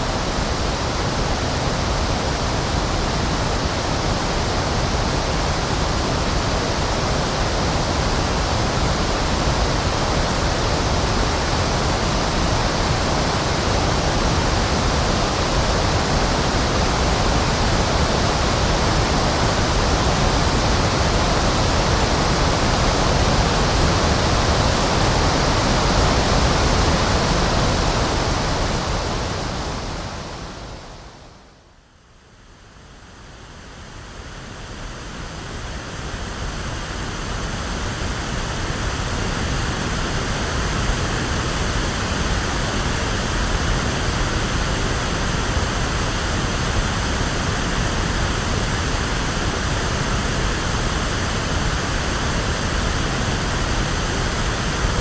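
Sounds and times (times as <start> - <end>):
pink noise hiss: 0.0 - 31.6.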